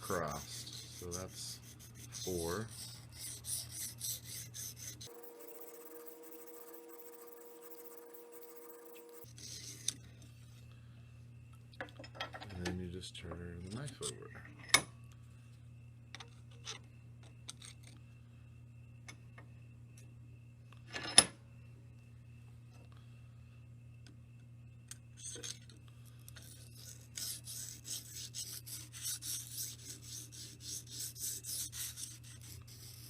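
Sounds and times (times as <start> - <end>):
honing stone rasping on knife: 0.0 - 9.9, 26.4 - 33.0.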